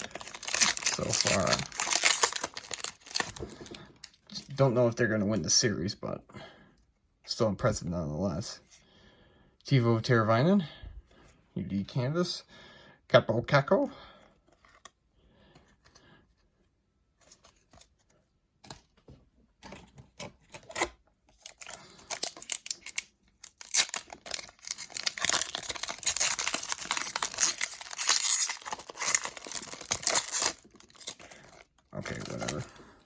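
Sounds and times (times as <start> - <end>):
foil wrapper tearing and crinkling: 0.0 - 3.6, 20.7 - 32.7.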